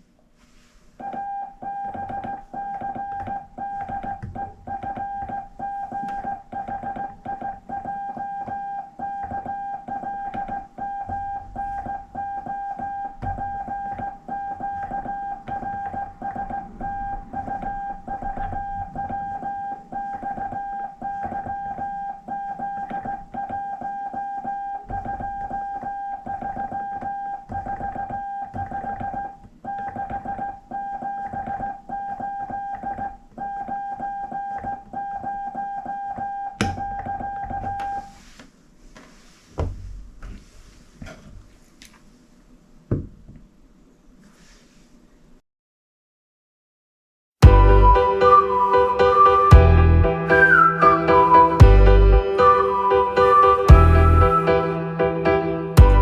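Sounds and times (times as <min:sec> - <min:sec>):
morse code sidetone beeping: 0:01.0 - 0:38.2, 0:47.4 - 0:54.9.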